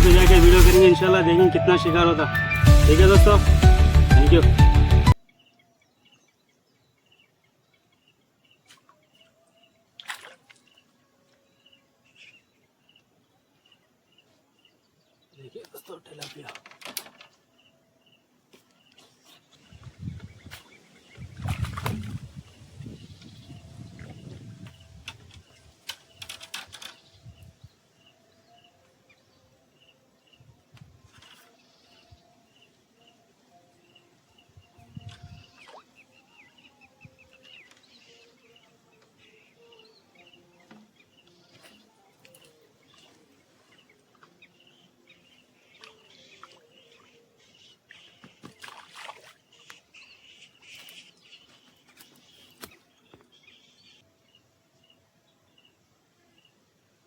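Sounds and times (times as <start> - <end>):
short high bird note: 0.0 - 5.2
birds calling: 31.1 - 54.1.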